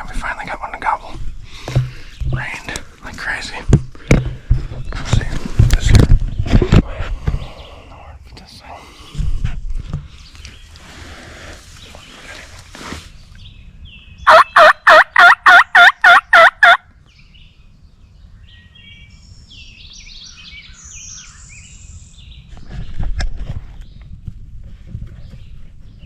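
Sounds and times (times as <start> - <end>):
turkey call yelps: 14.3 - 16.8.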